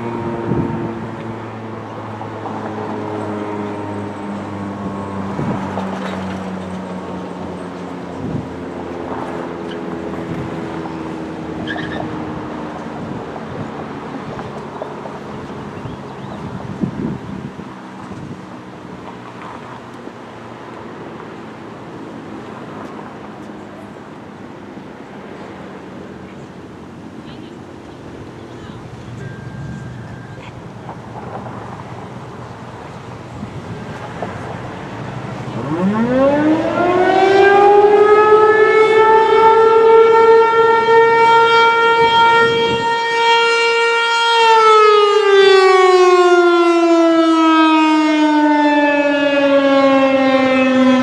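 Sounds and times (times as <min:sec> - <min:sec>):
traffic engines humming: 0:00.0 - 0:51.0
wind noise on microphone: 0:00.1 - 0:01.3, 0:04.8 - 0:06.4, 0:08.0 - 0:14.6, 0:15.4 - 0:18.7, 0:28.2 - 0:35.4, 0:41.0 - 0:43.1.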